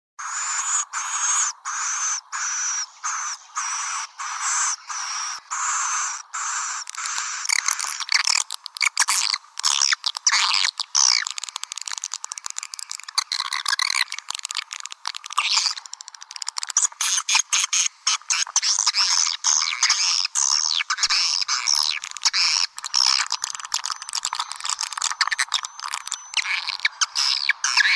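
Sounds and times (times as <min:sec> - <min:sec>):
high bird chirps: 0:00.2 - 0:11.5, 0:18.4 - 0:27.9
rapid twittering and clicking: 0:00.2 - 0:27.9.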